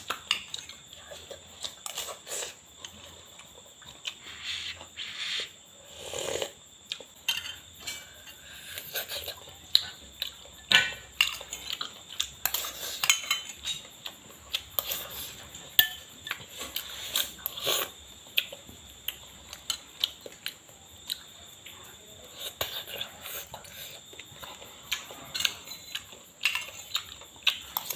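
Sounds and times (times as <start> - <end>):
utensils clinking against cookware: 7.2 - 8.4, 12.4 - 13.9, 14.8 - 16.1.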